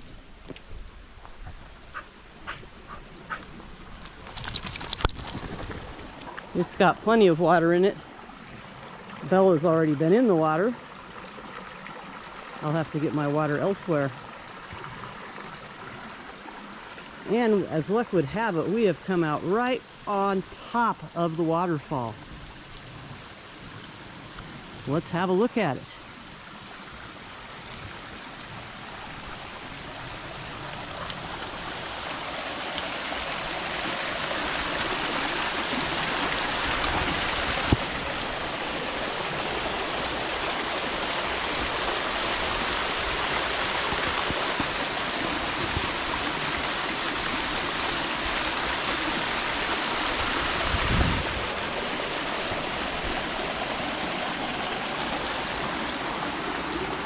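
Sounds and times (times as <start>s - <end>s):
waterfall rushing: 24.1s - 57.0s.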